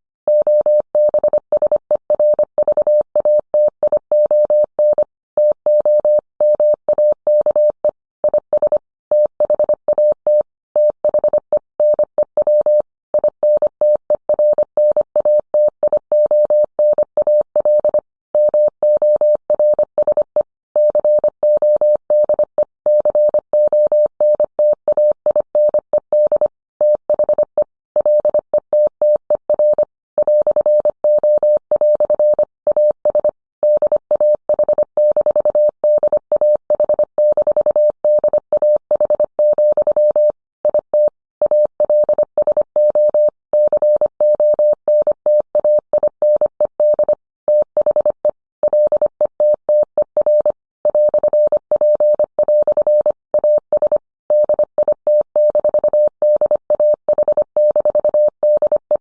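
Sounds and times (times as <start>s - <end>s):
morse code tone: 28.0s - 59.0s.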